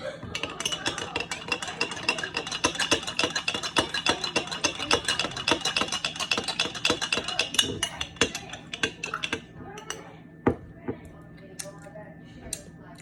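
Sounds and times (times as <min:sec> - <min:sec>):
spoon clinking in a dish: 0:00.2 - 0:10.6.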